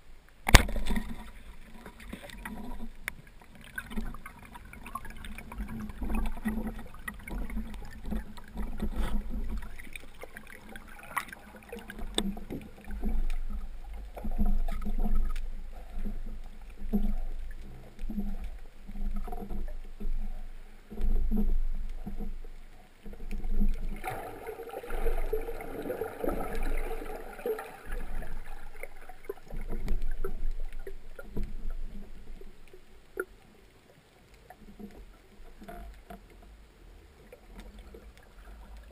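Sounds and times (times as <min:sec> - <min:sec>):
water sloshing and gurgling: 0:00.0 - 0:38.9.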